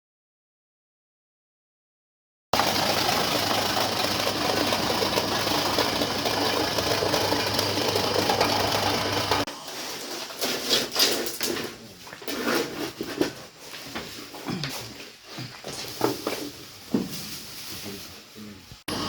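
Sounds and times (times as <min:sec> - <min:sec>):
shredding machine whirring: 0:02.6 - 0:11.4.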